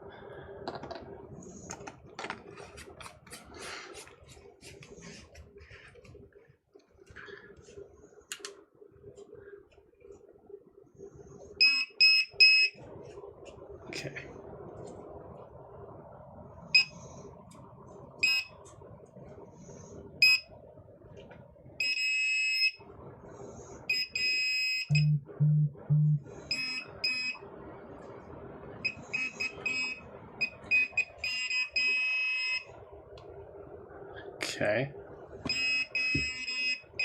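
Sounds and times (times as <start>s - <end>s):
metal detector beeping: 11.6s - 12.7s, 23.9s - 27.4s, 28.9s - 32.7s, 35.5s - 36.9s
low buzzes: 22.4s - 37.0s.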